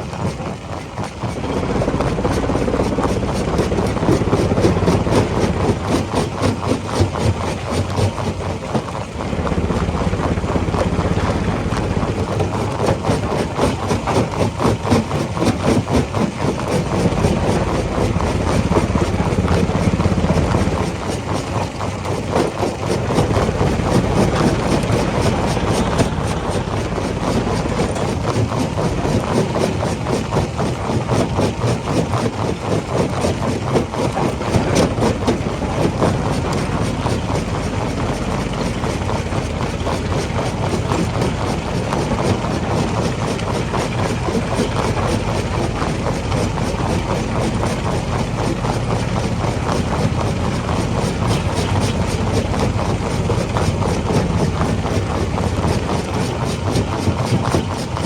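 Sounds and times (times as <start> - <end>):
heavy engine drone: 16.6 - 31.8, 33.6 - 58.0.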